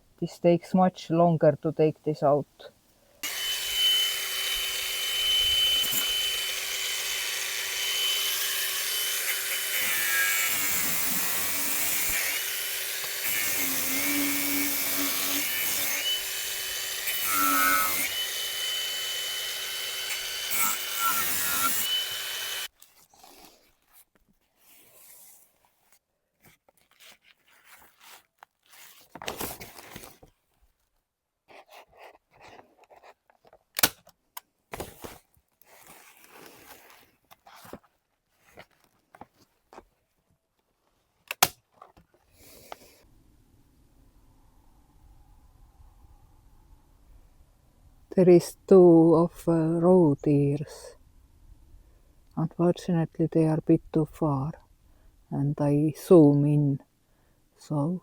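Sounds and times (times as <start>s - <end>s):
electric saw cutting wood: 3.2s - 22.7s.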